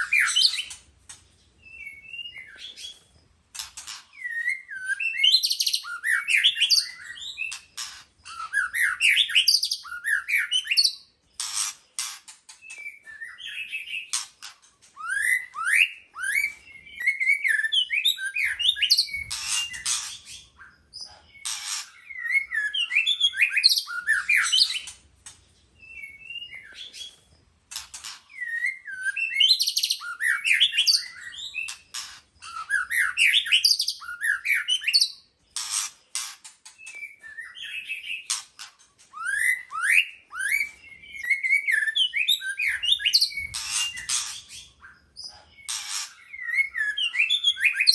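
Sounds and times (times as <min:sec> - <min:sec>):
bird singing whistled phrases: 0:01.7 - 0:03.0, 0:04.2 - 0:07.6, 0:08.3 - 0:11.1, 0:12.7 - 0:14.2, 0:15.0 - 0:20.0, 0:22.0 - 0:24.9, 0:25.8 - 0:27.2, 0:28.3 - 0:31.8, 0:32.4 - 0:35.3, 0:36.8 - 0:38.3, 0:39.1 - 0:45.0, 0:45.6 - 0:47.9.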